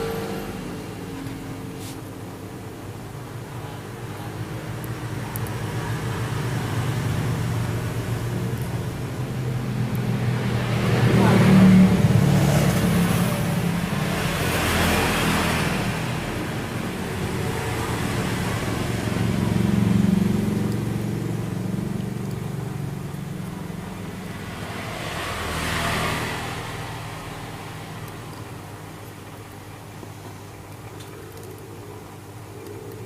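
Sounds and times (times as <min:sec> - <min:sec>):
engine running: 0:00.0 - 0:33.0.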